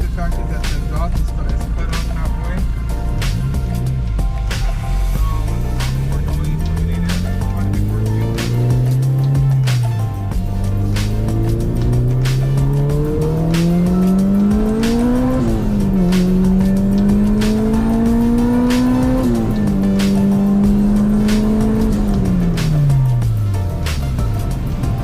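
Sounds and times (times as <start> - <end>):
car engine accelerating: 0.0 - 25.0
music: 0.0 - 25.0.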